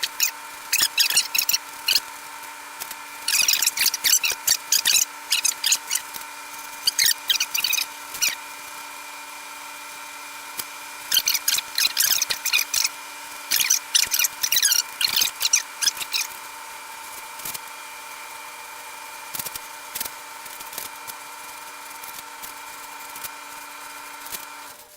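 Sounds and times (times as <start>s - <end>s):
steady background hum: 0.0s - 24.9s.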